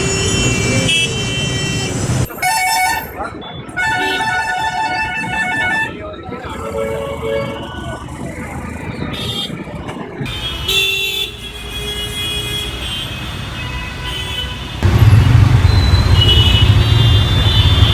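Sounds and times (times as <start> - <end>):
vehicle horns honking: 0.0 - 6.2, 10.3 - 17.9
traffic engine noise: 0.0 - 17.9
loud low rumble: 14.8 - 17.9.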